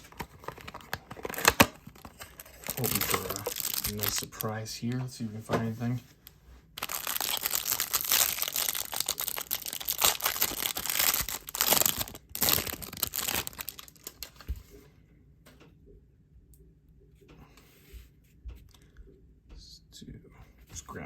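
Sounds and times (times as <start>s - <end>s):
packaging crinkling and tearing: 0.0s - 4.6s, 6.8s - 14.5s.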